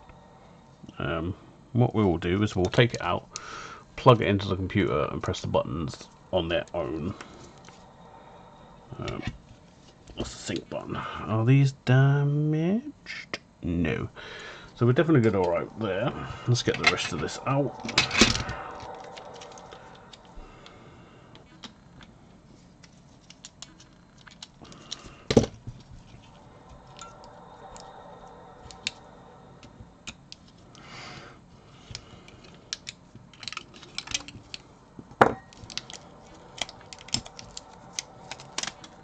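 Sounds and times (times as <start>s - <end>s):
plastic parts clicking: 22.8s - 25.8s, 31.9s - 34.6s, 35.5s - 39.0s.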